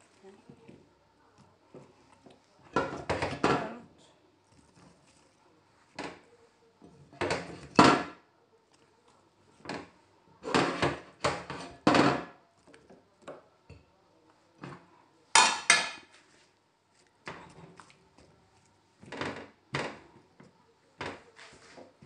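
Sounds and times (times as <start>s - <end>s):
dishes and pans clattering: 2.7s - 3.8s, 7.1s - 8.2s, 9.7s - 12.4s, 14.6s - 16.1s.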